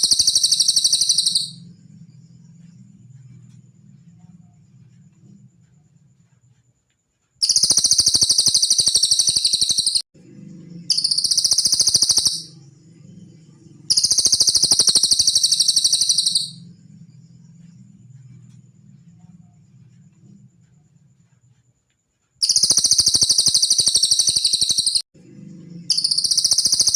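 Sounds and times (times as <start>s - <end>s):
songbird trilling: 0.0s - 1.6s, 7.4s - 10.0s, 10.9s - 12.6s, 13.9s - 16.6s, 22.4s - 25.0s.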